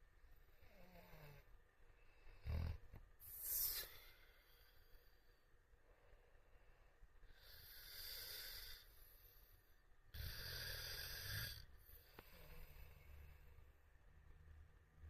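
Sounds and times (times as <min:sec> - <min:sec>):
man snoring: 0:00.5 - 0:01.5, 0:02.2 - 0:04.9, 0:07.3 - 0:09.4, 0:10.1 - 0:13.6
long noisy breath: 0:00.5 - 0:13.9.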